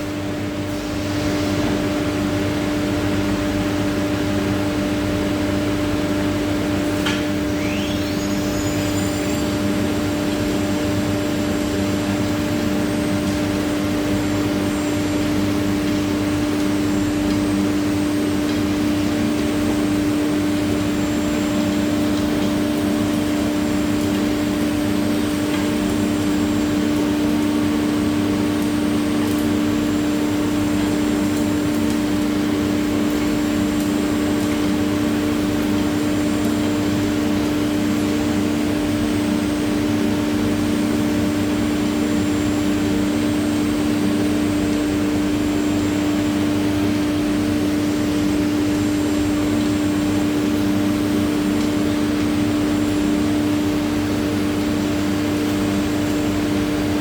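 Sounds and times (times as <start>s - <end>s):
cnc router spindle hum: 7.1s - 11.0s.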